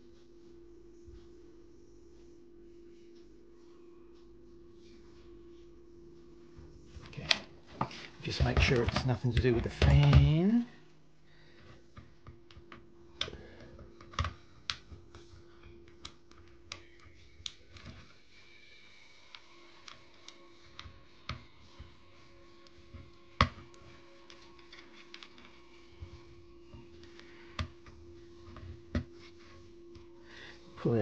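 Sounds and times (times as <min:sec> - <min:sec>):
faint steady hum: 0:00.0 - 0:31.0
hands handling computer parts: 0:07.0 - 0:10.6, 0:11.6 - 0:18.2, 0:19.3 - 0:30.1.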